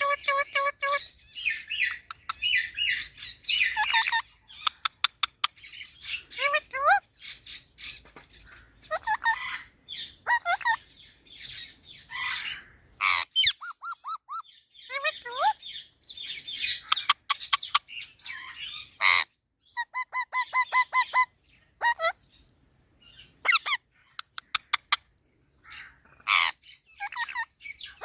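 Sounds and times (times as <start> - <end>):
parakeet chirping and squawking: 0.0 - 22.5, 23.1 - 28.0.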